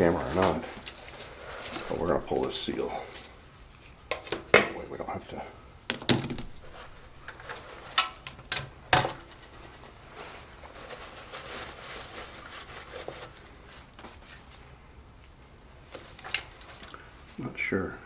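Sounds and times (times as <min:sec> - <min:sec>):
rubbing and scraping: 0:00.0 - 0:04.1, 0:06.4 - 0:08.4, 0:09.1 - 0:14.7.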